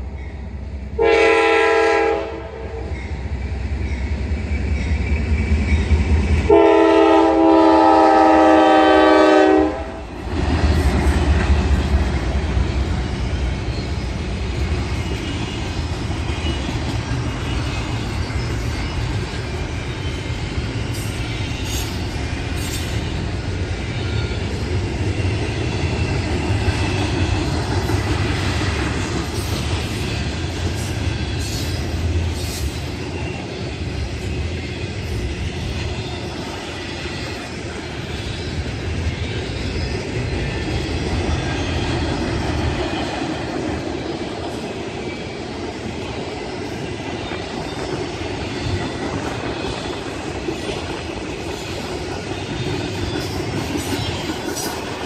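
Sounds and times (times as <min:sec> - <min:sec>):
train wheels rumbling on rails: 0:00.0 - 0:55.0
locomotive horn blast: 0:01.0 - 0:02.8, 0:06.5 - 0:10.1.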